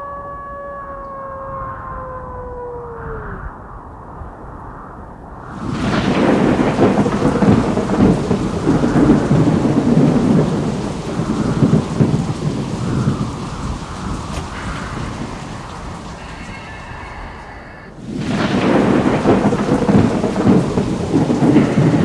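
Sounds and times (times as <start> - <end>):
steady rain: 5.4 - 22.0
thunder rolling: 5.5 - 22.0.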